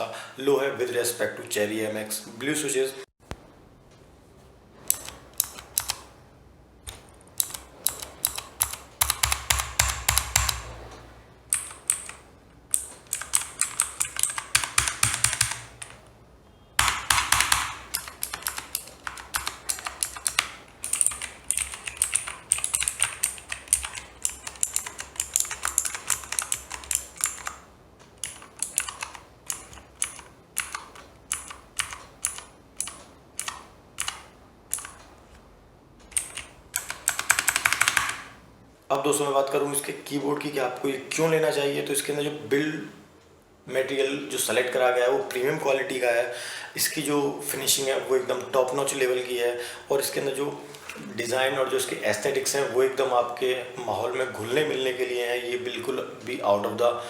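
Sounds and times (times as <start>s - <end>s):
typing on mechanical keyboard: 4.9s - 6.1s, 6.9s - 10.7s, 11.5s - 16.0s, 16.8s - 27.6s, 28.2s - 35.1s, 36.1s - 38.3s.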